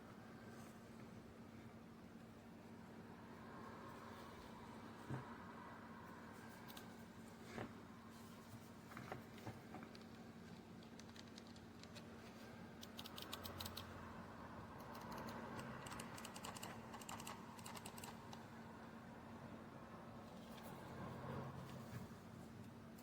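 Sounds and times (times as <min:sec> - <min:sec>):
keyboard typing: 0:10.8 - 0:12.1, 0:12.8 - 0:14.0, 0:14.8 - 0:18.4.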